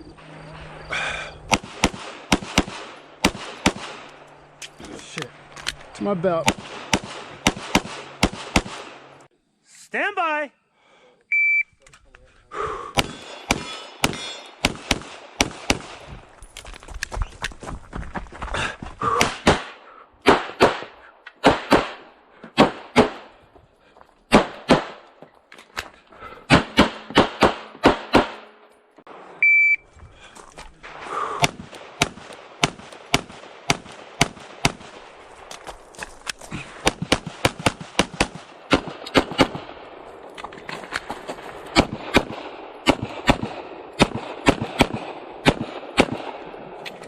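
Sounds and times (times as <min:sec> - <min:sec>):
pistol shots with echo: 0:01.5 - 0:04.3, 0:06.3 - 0:09.2, 0:13.0 - 0:16.1, 0:19.2 - 0:23.4, 0:24.3 - 0:25.1, 0:26.5 - 0:29.3, 0:30.8 - 0:35.4, 0:36.8 - 0:40.1, 0:41.7 - 0:46.8
electronic shot-timer beep: 0:29.4 - 0:29.8.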